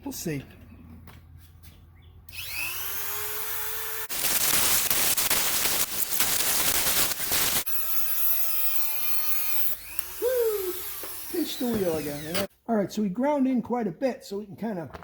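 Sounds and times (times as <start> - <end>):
angle grinder cutting metal: 2.3 - 12.5
angle grinder whine: 2.3 - 12.5.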